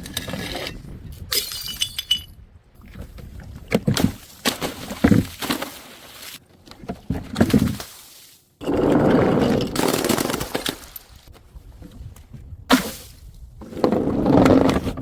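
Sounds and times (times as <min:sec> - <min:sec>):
knocks and cracks of smashing: 0:09.6 - 0:11.1, 0:12.7 - 0:13.3.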